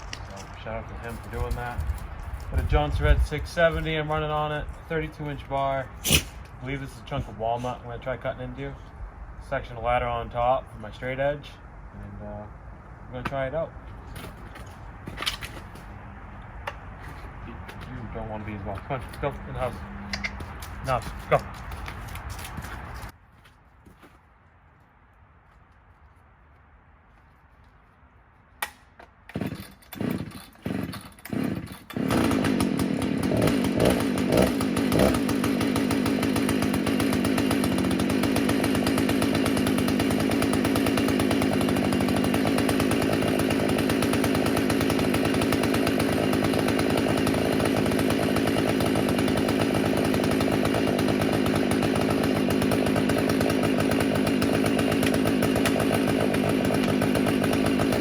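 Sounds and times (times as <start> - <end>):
chainsaw starting and running: 0.0 - 6.6, 17.6 - 22.3, 29.3 - 58.0.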